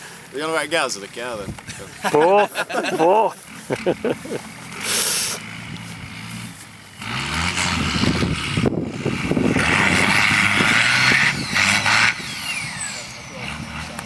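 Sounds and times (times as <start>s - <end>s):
engine revving: 3.0s - 14.0s
mud churning and spraying: 3.4s - 12.1s.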